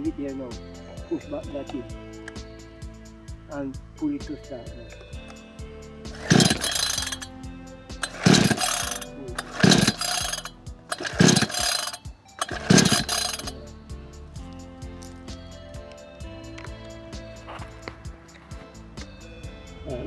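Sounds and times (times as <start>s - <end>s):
background music: 0.0s - 20.0s
chainsaw starter cord pulls: 6.2s - 7.3s, 8.0s - 13.6s.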